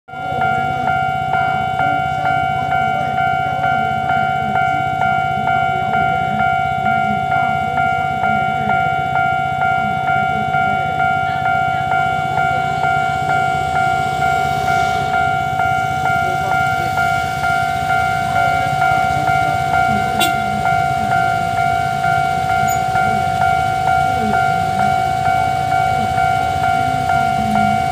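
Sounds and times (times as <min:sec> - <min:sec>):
level crossing bell ringing: 0:00.1 - 0:27.9.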